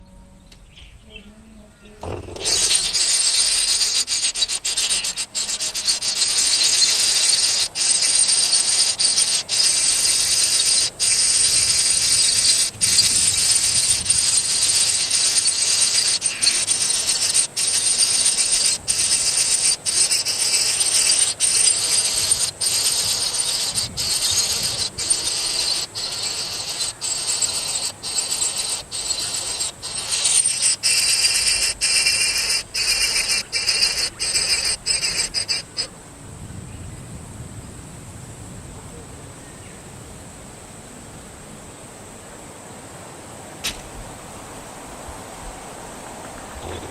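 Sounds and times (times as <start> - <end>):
high-pitched insect chorus: 2.0 - 35.9.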